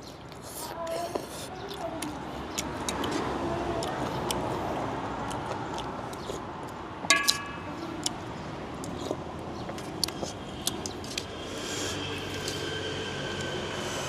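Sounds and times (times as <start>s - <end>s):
spoon clinking against bowl: 7.1s - 7.9s.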